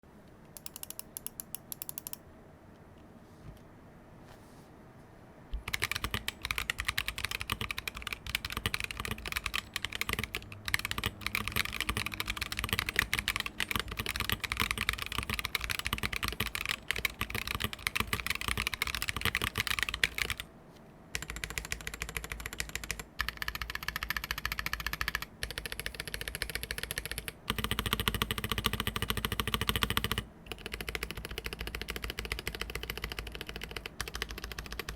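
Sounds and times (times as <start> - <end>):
fast typing on keyboard: 5.6 - 20.5, 21.2 - 34.9.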